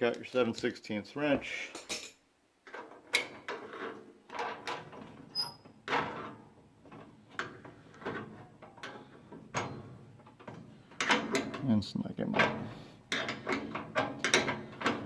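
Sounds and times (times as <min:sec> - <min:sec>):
brief squeak: 0:05.3 - 0:05.6
wrench clicking and scraping on metal: 0:13.1 - 0:15.0.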